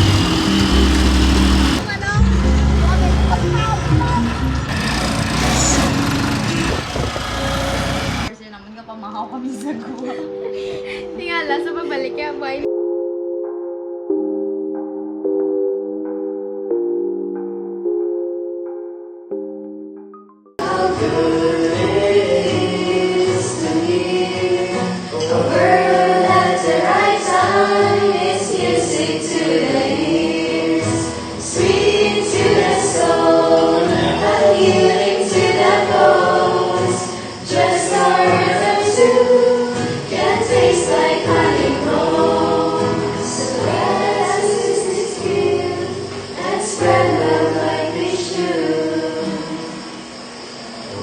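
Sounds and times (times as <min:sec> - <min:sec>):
choir singing a hymn: 0:00.0 - 0:01.9, 0:20.6 - 0:51.0.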